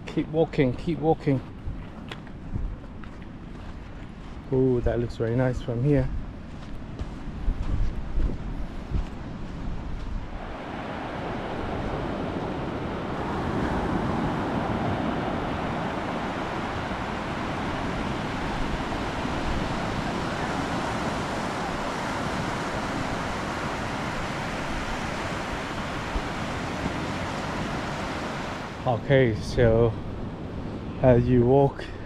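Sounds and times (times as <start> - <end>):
wind on microphone: 1.2 - 3.1, 4.8 - 32.0
surf washing onto beach: 10.2 - 29.5.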